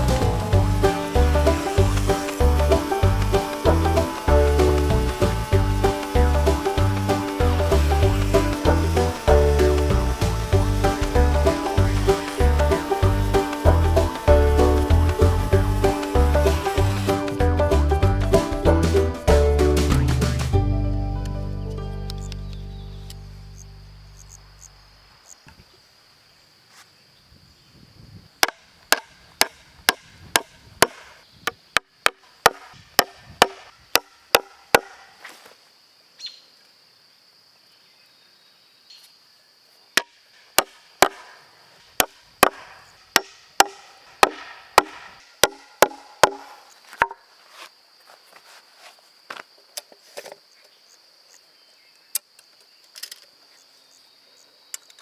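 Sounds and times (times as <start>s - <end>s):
hammer driving nails into boards: 42.0s - 47.2s.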